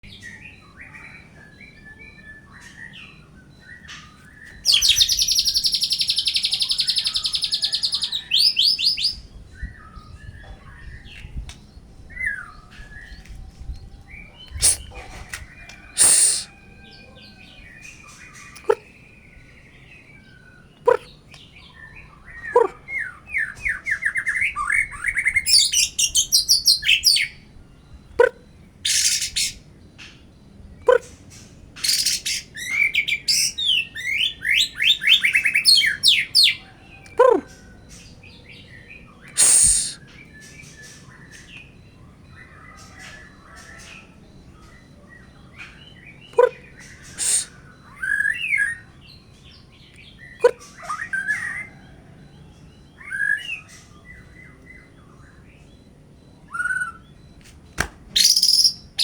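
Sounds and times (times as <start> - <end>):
bird harsh hissy bursts: 14.6 - 15.0, 16.0 - 16.5, 39.4 - 40.0, 47.2 - 47.5
bird singing whistled notes: 58.1 - 59.0.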